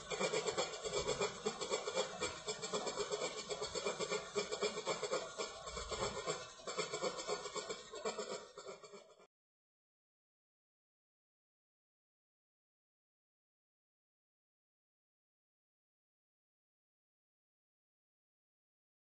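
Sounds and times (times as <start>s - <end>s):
compressor rhythmic rasping: 0.0s - 9.2s.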